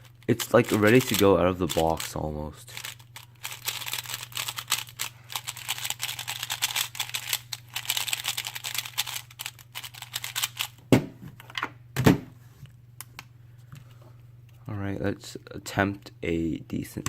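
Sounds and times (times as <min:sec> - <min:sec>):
plastic puzzle cube clicking: 0:02.8 - 0:10.7.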